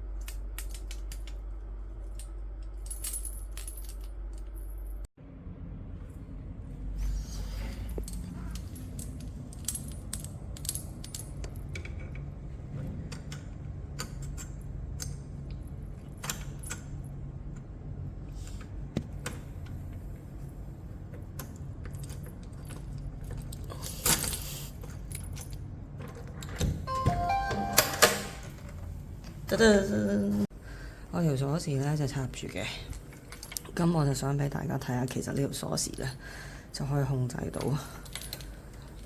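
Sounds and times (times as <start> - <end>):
keys jangling and clicking: 2.0 - 5.1, 7.8 - 12.3, 21.8 - 28.6.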